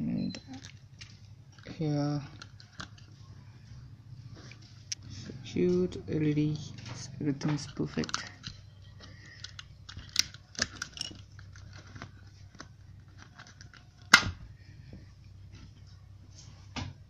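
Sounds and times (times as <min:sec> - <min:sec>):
plastic parts clicking and rattling: 0:00.3 - 0:03.2, 0:06.6 - 0:14.4.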